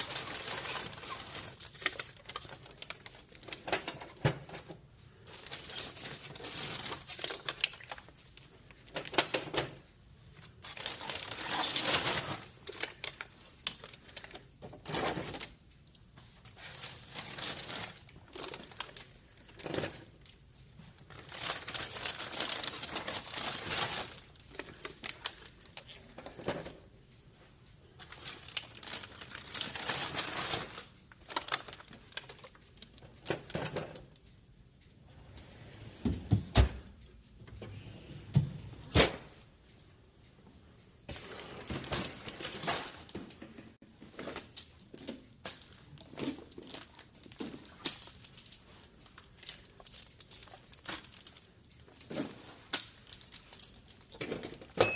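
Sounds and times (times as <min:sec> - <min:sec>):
plastic snack bags crinkling: 0:00.0 - 0:26.8, 0:27.9 - 0:34.1, 0:44.0 - 0:54.8.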